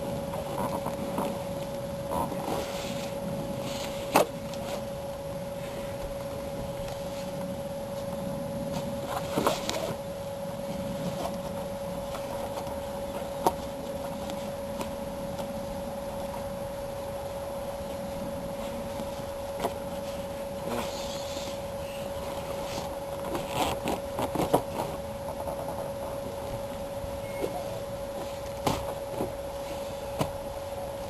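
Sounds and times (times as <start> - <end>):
steady mid-pitched tone: 25.0 - 31.0.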